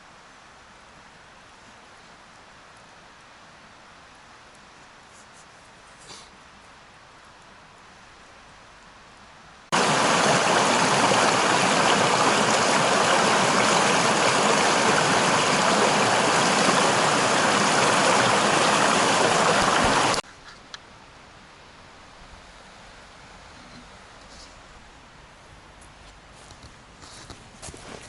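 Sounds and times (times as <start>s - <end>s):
river water rushing: 9.7s - 20.2s.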